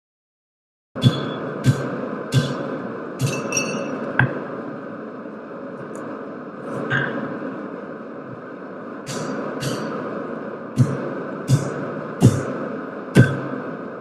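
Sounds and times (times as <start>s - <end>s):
hammer blows on steel anvil: 1.0s - 4.4s, 9.1s - 10.0s, 10.8s - 12.5s, 13.2s - 13.5s.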